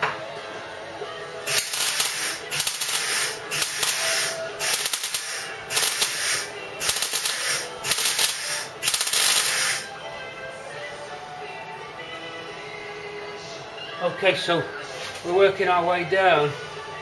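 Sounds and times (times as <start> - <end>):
welder crackling: 1.5 - 9.9.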